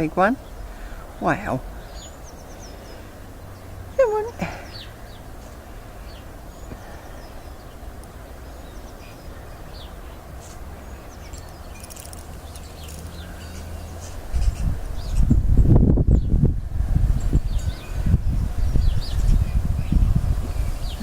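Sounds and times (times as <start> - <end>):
birds chirping and whistling: 0.4 - 16.4, 17.1 - 21.0
wind buffeting microphone: 4.7 - 21.0.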